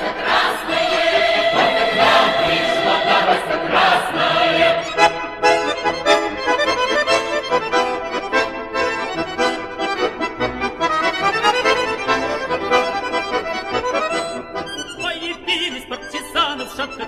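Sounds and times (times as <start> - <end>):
accordion dance tune: 0.0 - 17.0.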